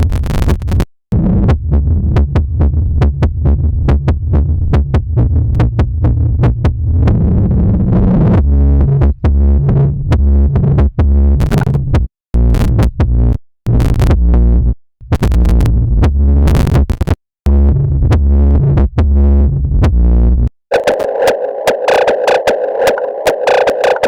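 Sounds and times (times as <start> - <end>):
electronic music with heavy bass: 8.3 - 24.0.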